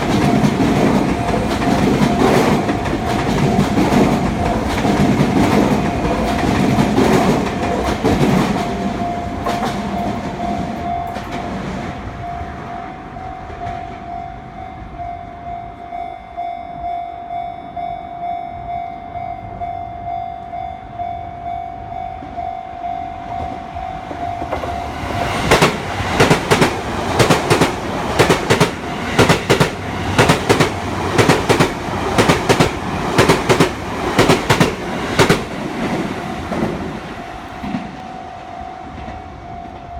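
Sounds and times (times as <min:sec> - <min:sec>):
electric train rumble: 0:00.0 - 0:39.9
level-crossing alarm ringing: 0:00.0 - 0:39.9
train wheels clattering over rail joints: 0:24.4 - 0:36.9.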